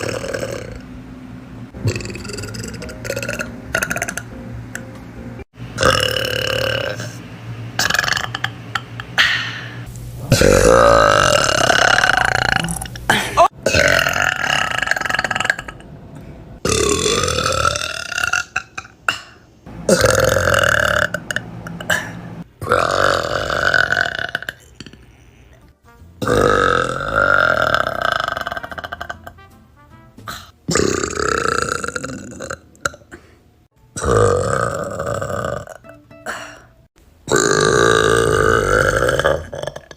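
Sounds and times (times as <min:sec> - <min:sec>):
young women burping: 0:10.3 - 0:15.8, 0:34.0 - 0:36.7.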